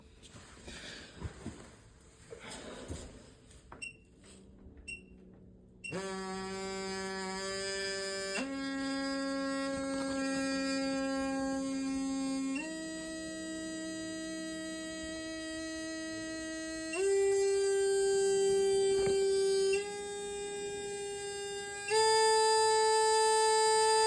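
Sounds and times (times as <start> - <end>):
vibration motor buzzing whine: 4.8 - 24.0.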